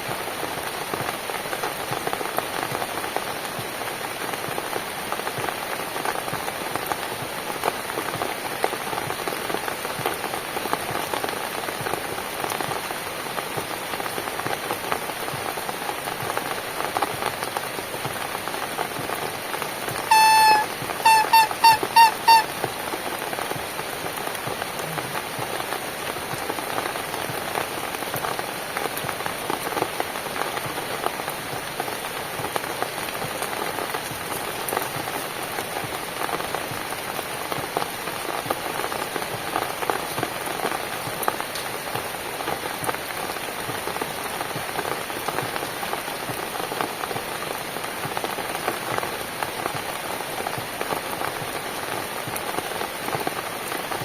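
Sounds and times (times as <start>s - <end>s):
rain falling: 0.0s - 54.0s
high-pitched notes: 20.1s - 22.5s.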